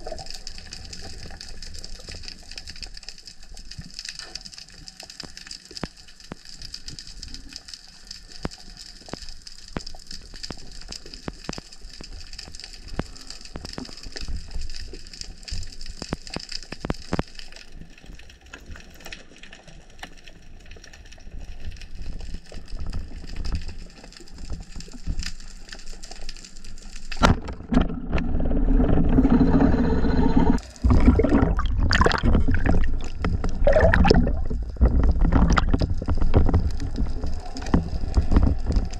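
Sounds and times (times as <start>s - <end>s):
clicks and crackles: 0.0s - 29.5s, 30.5s - 38.9s
rush of water: 30.6s - 38.9s.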